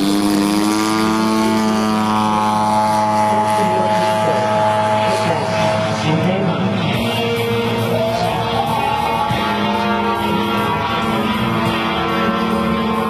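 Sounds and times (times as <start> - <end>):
model airplane engine at high throttle: 0.0 - 13.0.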